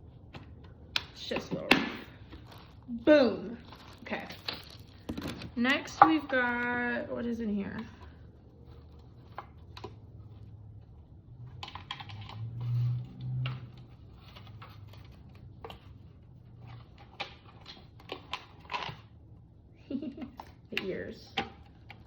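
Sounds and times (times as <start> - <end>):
package clicks and rustles: 0.3 - 3.0, 3.6 - 6.8, 11.5 - 19.2.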